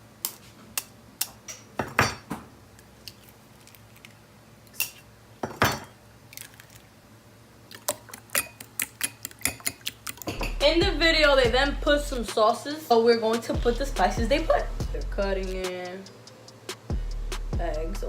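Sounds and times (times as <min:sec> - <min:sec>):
dishes and utensils clinking: 0:04.8 - 0:06.0, 0:08.3 - 0:10.7.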